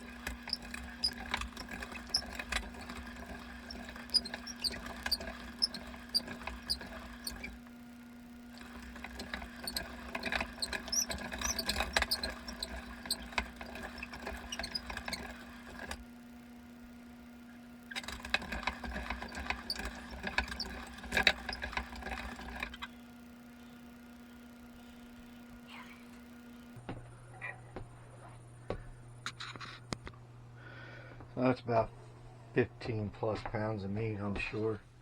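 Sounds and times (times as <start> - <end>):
hand-cranked meat grinder squeaking: 0.0 - 7.7, 8.5 - 16.0, 17.6 - 23.0.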